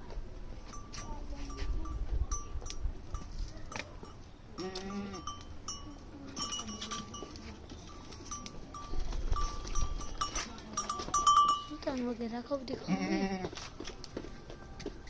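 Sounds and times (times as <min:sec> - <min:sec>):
livestock bells clinking: 0:00.5 - 0:12.8
animal bleat: 0:04.6 - 0:05.3, 0:12.8 - 0:13.6.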